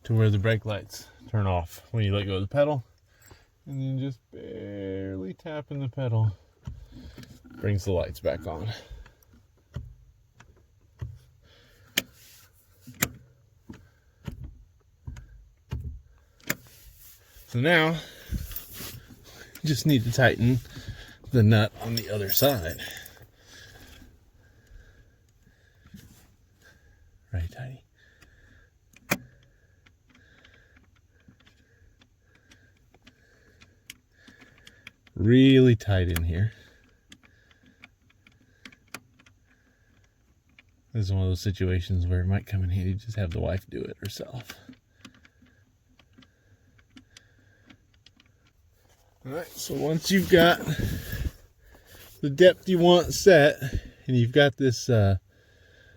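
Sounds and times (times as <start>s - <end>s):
heavy breathing: 17.2s - 27.2s, 49.0s - 54.2s, 55.2s - 55.9s
small metal clicks: 36.8s - 40.9s.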